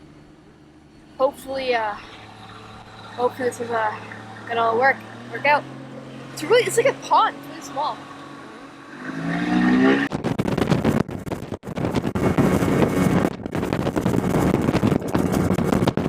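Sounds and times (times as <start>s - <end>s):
boat rushing through water: 0.0s - 9.9s
boat motor revving: 0.0s - 10.7s.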